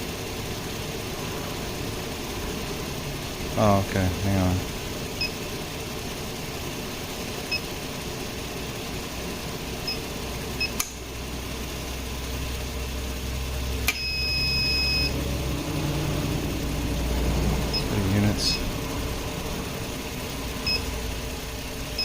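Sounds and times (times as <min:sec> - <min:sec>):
car engine idling: 0:00.0 - 0:22.0
electronic keypad beeps: 0:13.9 - 0:15.2, 0:17.7 - 0:18.6.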